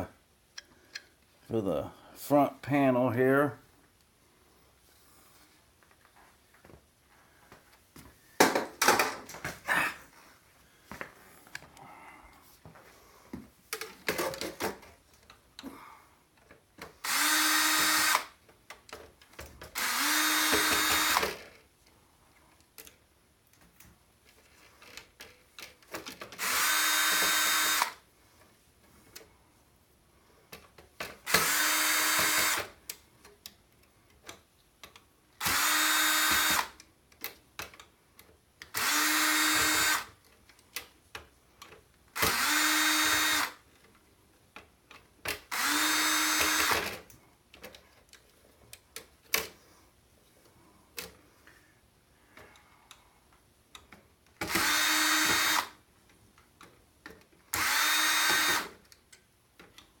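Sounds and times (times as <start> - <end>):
power drill driving screws out: 17.0 - 18.4, 19.7 - 21.6, 26.2 - 28.0, 31.2 - 32.8, 35.4 - 36.8, 38.7 - 40.2, 42.2 - 43.6, 45.4 - 47.1, 54.4 - 55.8, 57.5 - 58.8.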